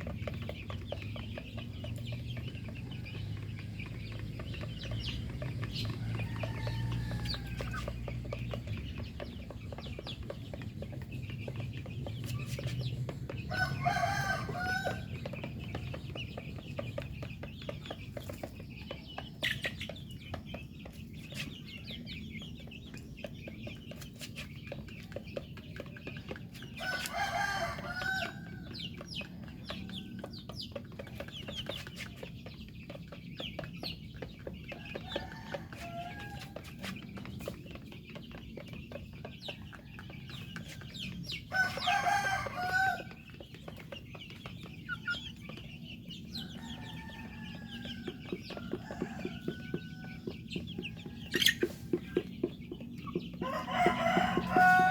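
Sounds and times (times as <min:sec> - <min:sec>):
chickens clucking: 0:00.0 - 0:54.9
rooster crowing: 0:13.5 - 0:15.1, 0:26.8 - 0:28.5, 0:41.5 - 0:43.1, 0:53.4 - 0:54.9.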